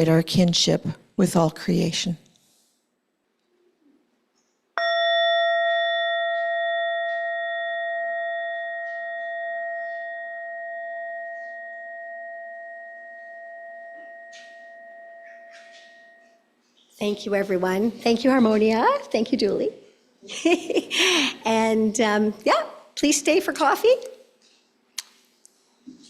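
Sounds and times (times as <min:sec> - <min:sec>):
bell ringing: 0:04.8 - 0:16.5.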